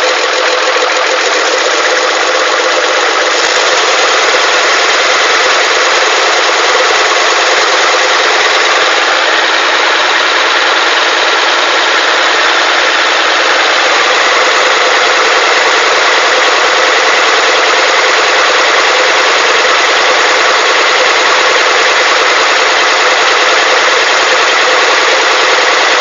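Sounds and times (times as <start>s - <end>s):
diesel truck engine running: 0.0s - 26.0s.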